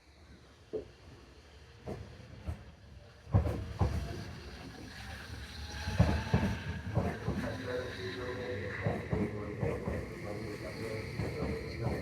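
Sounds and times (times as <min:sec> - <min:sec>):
train running rumble and hiss: 0:00.4 - 0:12.0
train wheels knocking: 0:06.0 - 0:07.5.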